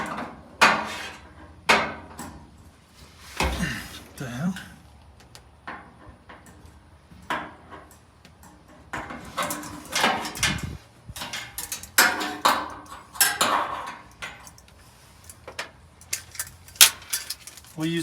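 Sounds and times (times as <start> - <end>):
light metal clinking: 16.0 - 18.0.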